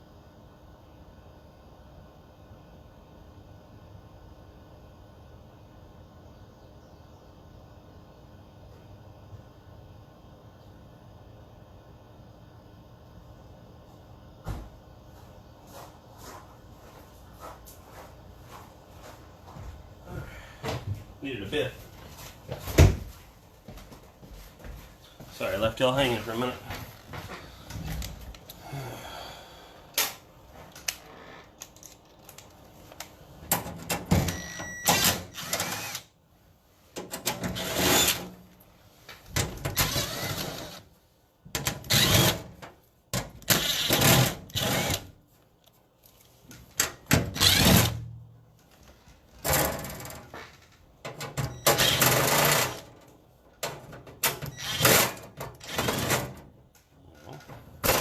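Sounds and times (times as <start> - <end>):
handheld power tool bursts: 34.8 - 36.1, 41.8 - 42.5.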